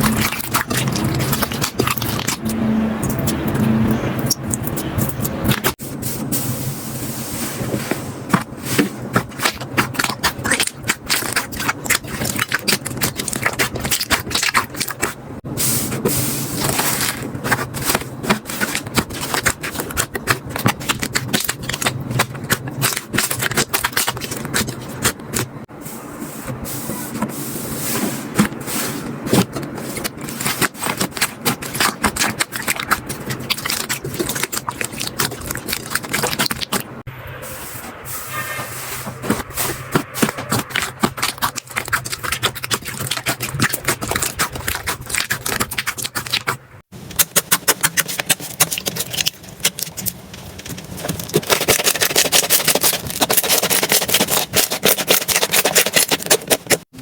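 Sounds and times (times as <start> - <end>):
slime crackling and popping: 0.0 - 3.6, 9.2 - 15.2, 16.6 - 25.5, 30.0 - 36.9, 40.2 - 56.9.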